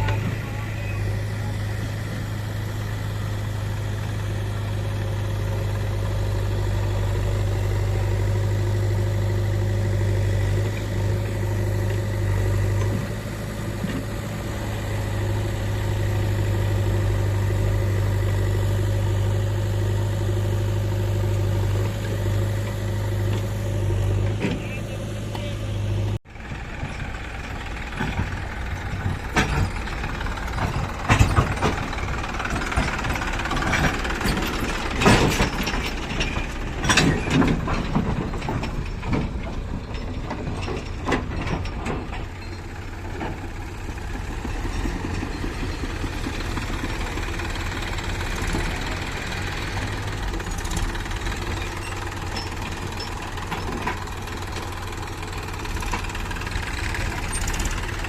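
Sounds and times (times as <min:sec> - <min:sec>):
heavy diesel machinery running: 0:00.0 - 0:58.0
metal clanks and knocks: 0:27.8 - 0:58.0.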